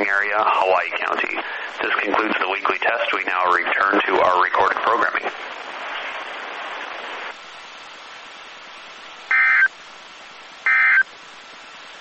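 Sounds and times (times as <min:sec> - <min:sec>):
radio static hiss: 0:00.0 - 0:12.0
digital data bursts: 0:09.3 - 0:09.7, 0:10.6 - 0:11.1.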